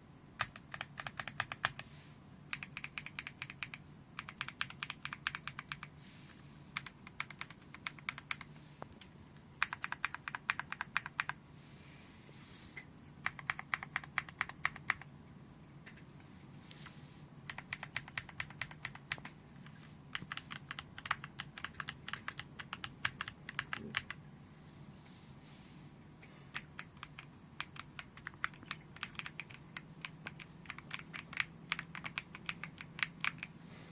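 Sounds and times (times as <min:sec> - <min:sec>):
faint low hum: 0:00.0 - 0:33.9
mechanical keyboard typing: 0:00.4 - 0:01.8, 0:02.5 - 0:05.9, 0:06.7 - 0:08.5, 0:09.6 - 0:11.4, 0:13.2 - 0:15.1, 0:17.4 - 0:24.2, 0:26.5 - 0:33.5.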